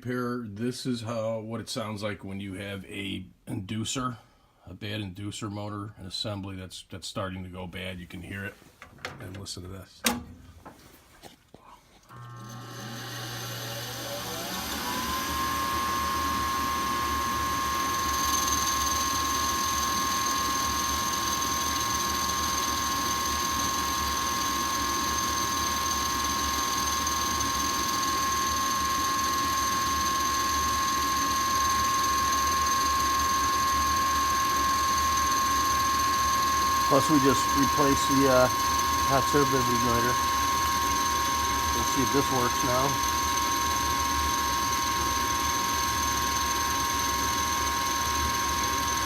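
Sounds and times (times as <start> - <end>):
furnace inducer motor whine: 12.1 - 49.0.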